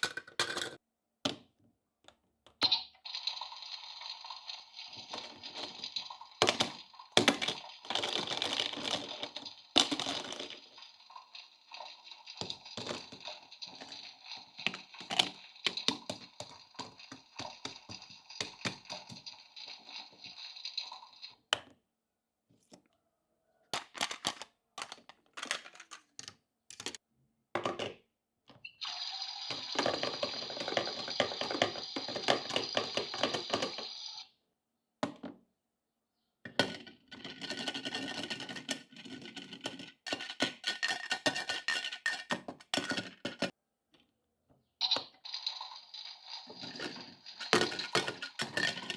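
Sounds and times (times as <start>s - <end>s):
plastic toy pieces clicking: 23.8s - 27.0s, 36.6s - 43.5s, 46.7s - 48.9s.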